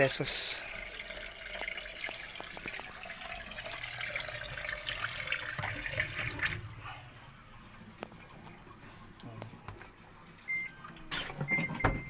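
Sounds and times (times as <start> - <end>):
water splashing from drain: 0.4 - 6.9.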